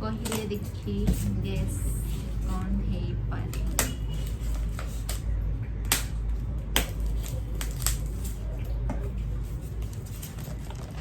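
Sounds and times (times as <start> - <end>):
packaging clicking and crackling: 3.5 - 11.0.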